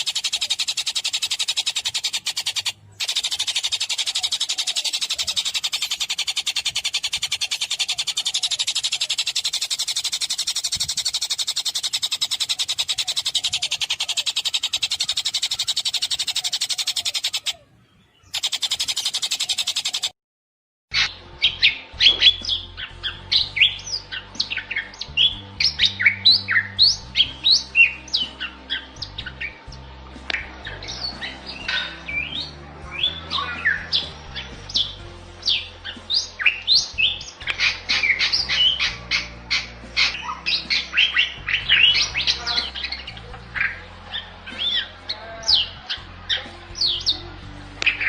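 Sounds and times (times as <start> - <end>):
bird chirps and whistles: 0.0 - 17.6, 18.3 - 20.1
songbird fast high trill: 0.0 - 17.6, 18.3 - 20.1.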